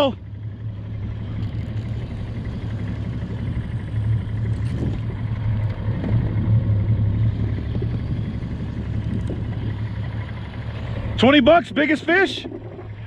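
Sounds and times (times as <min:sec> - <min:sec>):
outboard motor running: 0:00.0 - 0:13.0.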